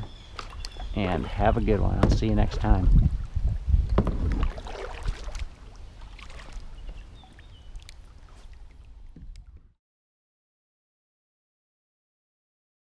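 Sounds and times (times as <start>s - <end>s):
wind rumble on microphone: 0.0s - 6.0s
light knocks from kayak: 1.9s - 2.7s, 3.8s - 4.6s, 9.1s - 9.7s.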